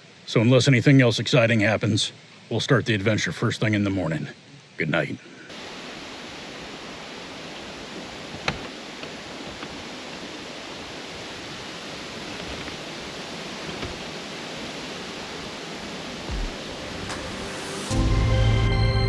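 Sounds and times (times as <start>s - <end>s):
outdoor background hiss: 0.0s - 19.0s
short low thump: 16.3s - 18.0s.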